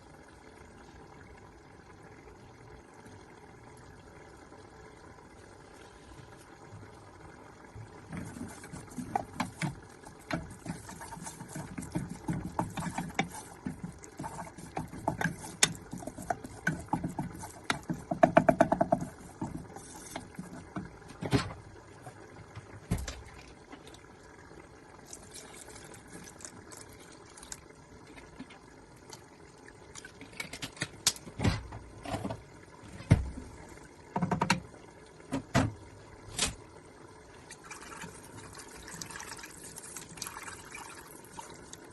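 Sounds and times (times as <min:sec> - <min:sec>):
rapid stirring or scraping: 0:08.0 - 0:20.9.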